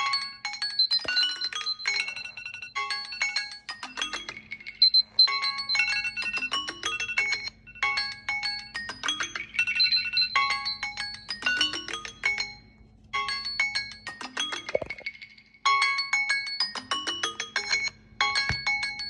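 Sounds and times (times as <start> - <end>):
smartphone alarm tone: 0.0 - 11.8.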